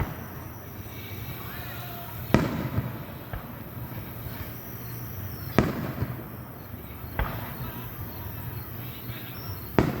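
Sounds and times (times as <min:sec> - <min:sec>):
fireworks bangs: 0:00.0 - 0:10.0
faint firework pop: 0:07.2 - 0:07.5.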